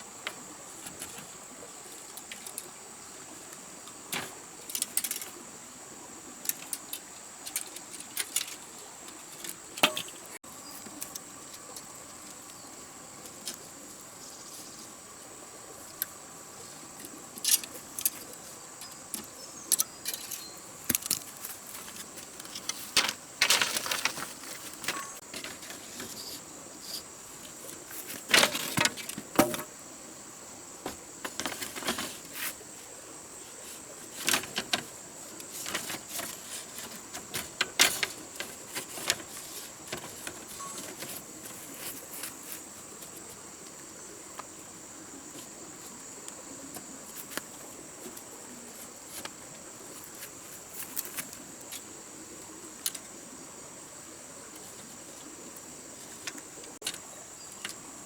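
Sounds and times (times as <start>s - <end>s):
insect drone: 0.0s - 58.0s
clicks and knocks of handling: 2.0s - 2.7s, 3.9s - 5.4s, 6.4s - 12.6s, 17.0s - 29.7s, 30.8s - 32.6s, 33.7s - 43.3s, 56.0s - 57.8s.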